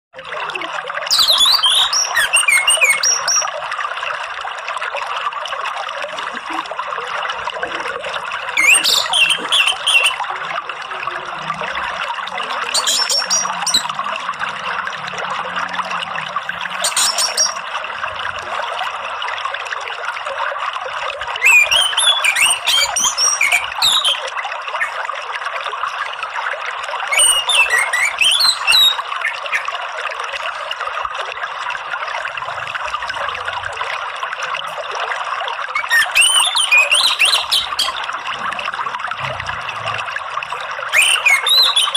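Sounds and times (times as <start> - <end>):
flowing water rushing: 0.2 - 41.9
thrush singing whistled phrases: 1.1 - 3.6, 8.4 - 10.6, 12.4 - 14.0, 16.5 - 17.6, 21.3 - 25.0, 27.1 - 29.8, 35.7 - 38.1, 40.9 - 41.9.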